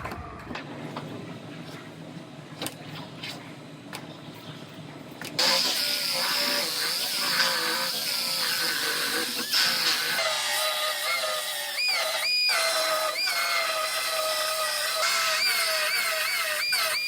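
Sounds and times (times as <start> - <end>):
power tool whining: 5.4 - 17.0.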